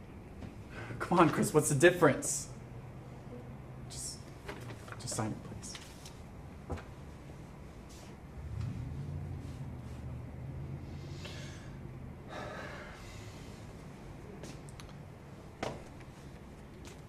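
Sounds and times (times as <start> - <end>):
low room hum: 0.0 - 17.0
person sighing and breathing: 11.0 - 13.4.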